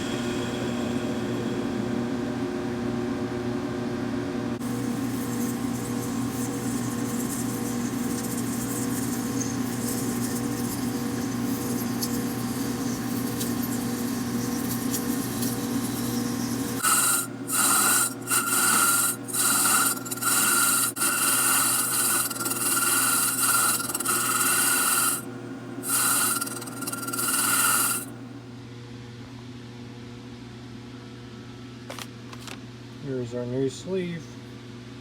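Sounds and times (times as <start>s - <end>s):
abrasive rasp with high whine: 4.8s - 28.2s
lathe running: 15.2s - 28.2s.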